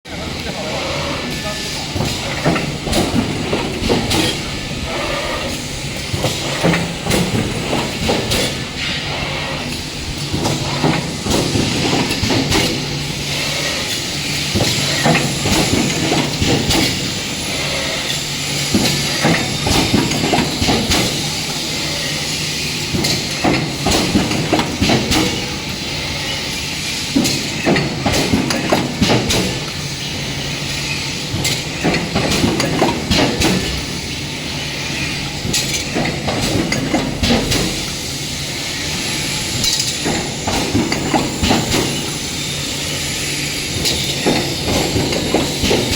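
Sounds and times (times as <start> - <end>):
air hiss bursts: 3.9 - 31.7
punch press strikes and clanks: 18.1 - 21.3.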